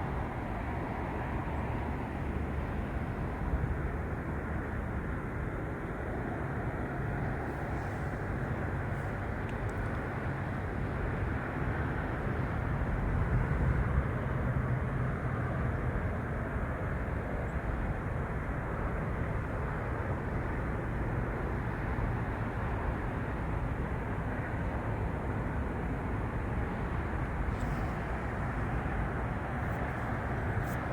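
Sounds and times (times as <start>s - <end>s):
low background rumble: 25.6s - 30.9s.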